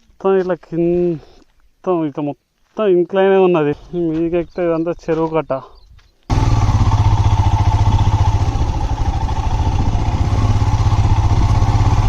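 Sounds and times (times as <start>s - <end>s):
motorcycle engine running: 6.3s - 12.0s.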